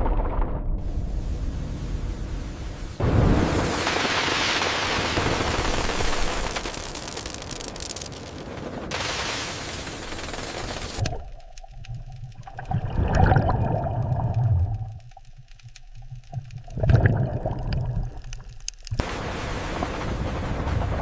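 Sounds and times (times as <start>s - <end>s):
underwater rumbling and gurgling: 0.0s - 4.2s, 9.9s - 21.0s
loud rushing hiss: 0.9s - 8.0s
faint clicks: 11.0s - 12.8s, 14.0s - 16.8s.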